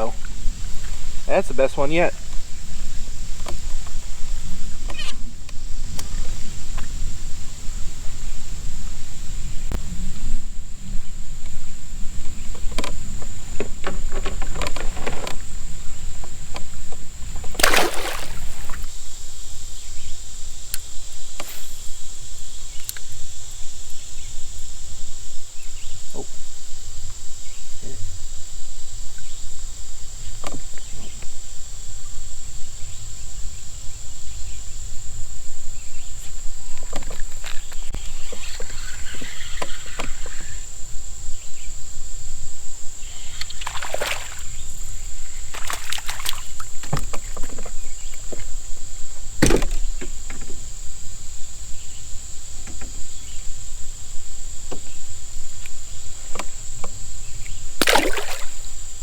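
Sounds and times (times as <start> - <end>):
water sloshing around boat: 11.6 - 18.9, 36.0 - 40.5, 43.0 - 51.4, 54.6 - 59.0
high-pitched insect drone: 17.6 - 59.0
knocks against boat hull: 49.4 - 50.6.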